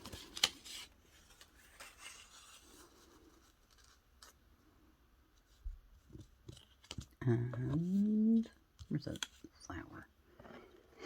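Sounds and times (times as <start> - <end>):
paper and stickers rustling: 0.0 - 4.4, 5.4 - 9.8.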